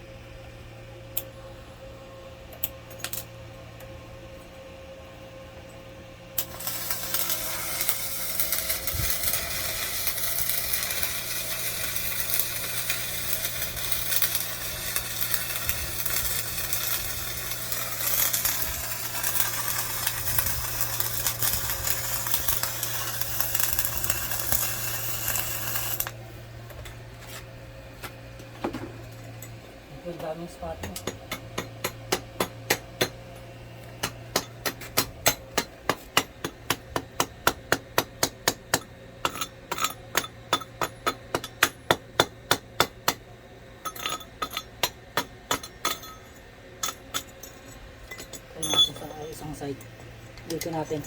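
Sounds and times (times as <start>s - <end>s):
welding arc crackling: 6.4s - 26.2s.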